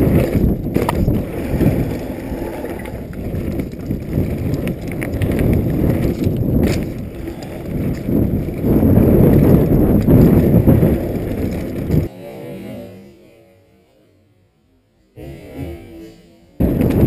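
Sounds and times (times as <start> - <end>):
mountain bike rattling: 0.0 - 12.1
tyres rumbling over dirt trail: 0.0 - 12.1, 16.6 - 17.0
wind buffeting microphone: 0.0 - 12.1, 16.6 - 17.0.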